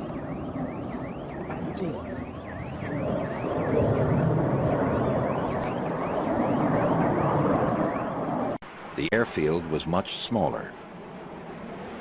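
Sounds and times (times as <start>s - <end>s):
siren yelping: 0.0s - 8.6s.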